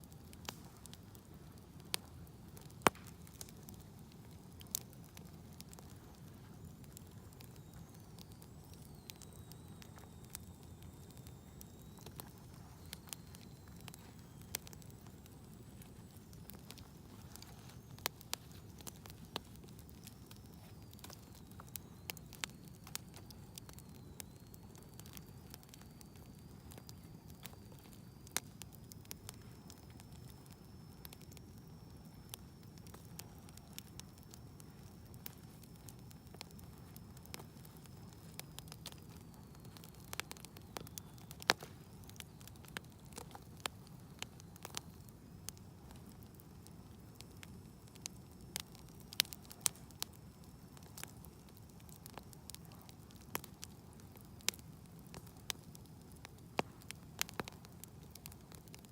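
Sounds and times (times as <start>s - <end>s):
low steady fire rumble: 0.0s - 58.9s
wood fire crackling and popping: 0.0s - 58.9s
faint high thin whistle: 5.8s - 43.5s.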